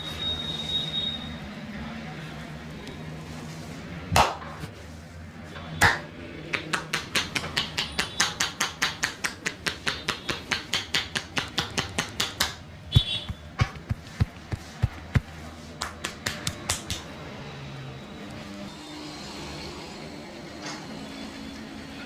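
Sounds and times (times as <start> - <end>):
hands slapping body: 4.2 - 4.4, 5.8 - 17.1
fast run of hand strikes: 5.8 - 17.0.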